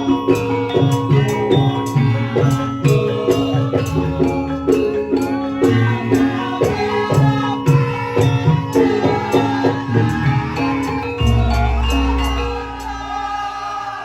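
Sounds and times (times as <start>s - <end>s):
ringing metallophones and gongs: 0.0s - 14.0s
hand drum strokes: 6.7s - 13.4s.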